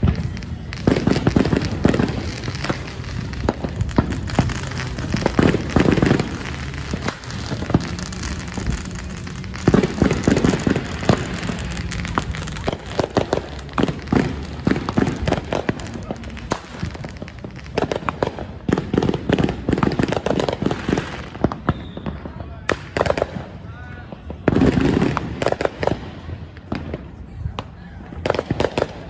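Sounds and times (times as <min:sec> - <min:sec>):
fireworks crackling and popping: 0:00.0 - 0:29.0.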